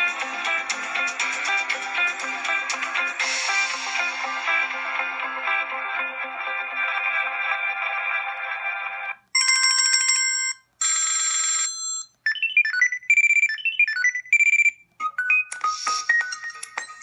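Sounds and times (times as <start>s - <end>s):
beeping ringtone melody: 9.4s - 17.0s
phone ringtone chimes: 9.4s - 17.0s.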